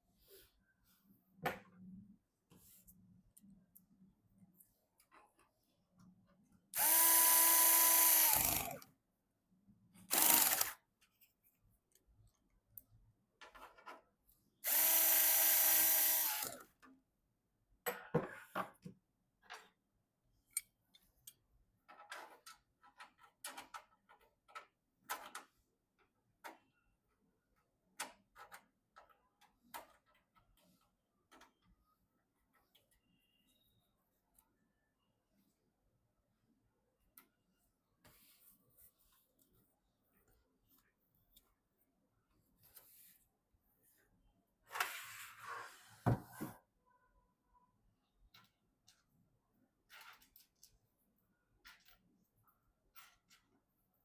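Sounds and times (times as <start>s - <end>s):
electric screwdriver whining: 6.8s - 8.8s, 10.1s - 10.8s, 14.6s - 16.6s.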